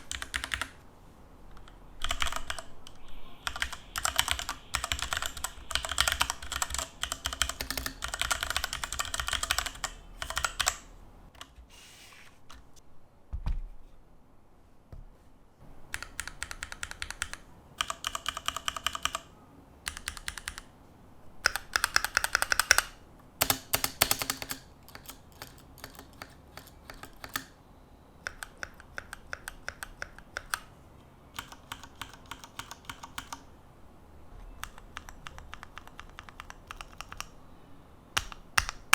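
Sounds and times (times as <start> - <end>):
mechanical keyboard typing: 0.0 - 0.8, 1.5 - 11.6, 15.9 - 20.7, 21.4 - 27.6, 28.2 - 30.7, 31.3 - 33.5, 34.6 - 37.4, 38.1 - 38.9.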